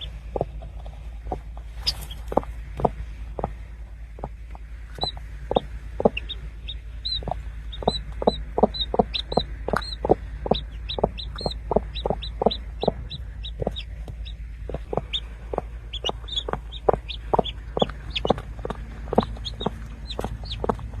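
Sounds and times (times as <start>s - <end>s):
chicks peeping: 0.0s - 3.6s, 4.2s - 21.0s
constant low hum: 0.0s - 21.0s
short low clucks: 7.1s - 21.0s.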